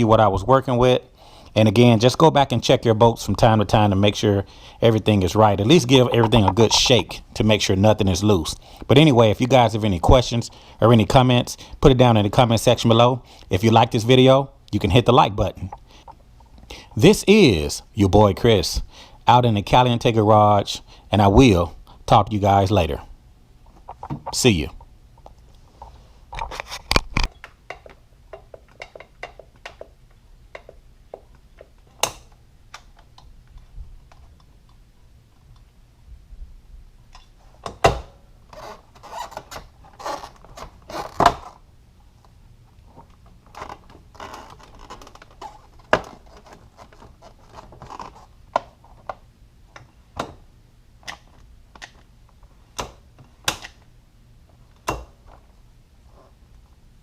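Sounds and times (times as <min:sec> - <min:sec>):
rustling: 0:42.8 - 0:49.1.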